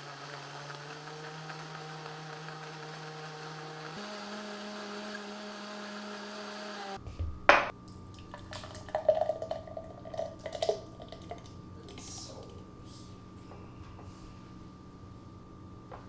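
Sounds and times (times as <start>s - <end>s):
motor hum: 0.0s - 8.3s.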